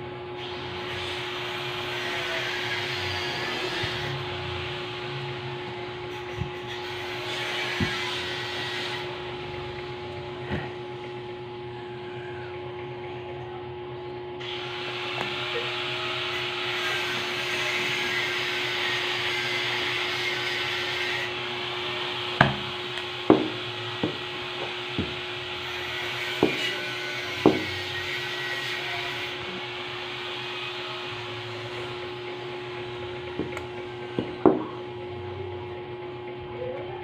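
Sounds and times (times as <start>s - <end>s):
machine hum: 0.0s - 37.0s
sharp knocks: 22.4s - 25.2s, 26.4s - 26.7s, 27.4s - 27.8s.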